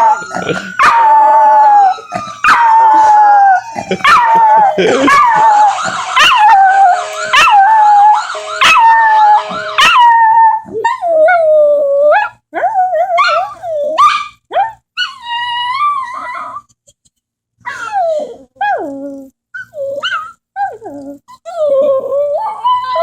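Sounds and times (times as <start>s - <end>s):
police siren: 0.0s - 10.6s
puppy howling: 0.0s - 16.6s, 17.7s - 23.0s.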